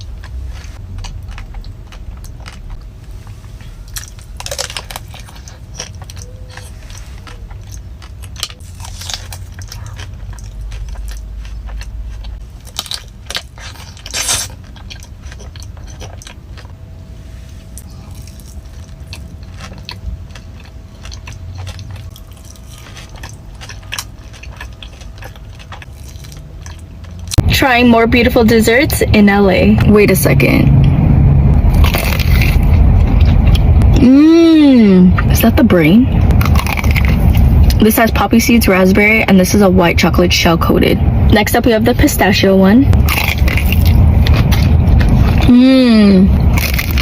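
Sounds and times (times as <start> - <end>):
chewing crunchy desserts: 0.0 - 27.5, 31.7 - 34.1, 35.2 - 38.6, 42.9 - 45.6, 46.3 - 47.0.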